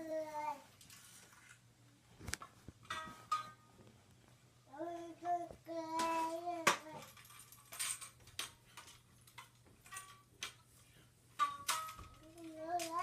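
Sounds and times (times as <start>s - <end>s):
child's voice holding a steady note: 0.0s - 0.7s, 4.7s - 7.1s, 12.2s - 13.0s.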